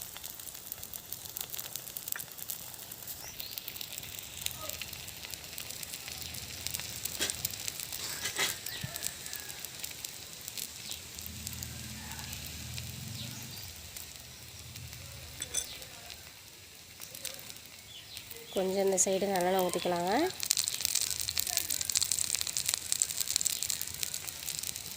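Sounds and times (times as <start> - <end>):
food sizzling in oil: 0.0 - 24.9
low hum: 12.5 - 15.7.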